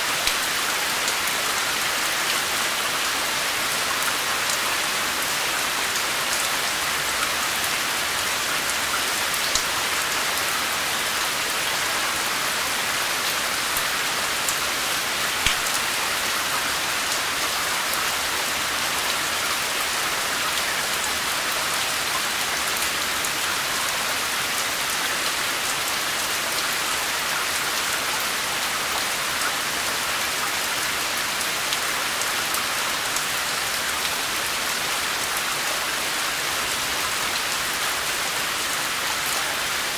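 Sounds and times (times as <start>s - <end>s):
steady rain falling: 0.0s - 39.9s
sharp raindrop ticks: 15.4s - 15.8s.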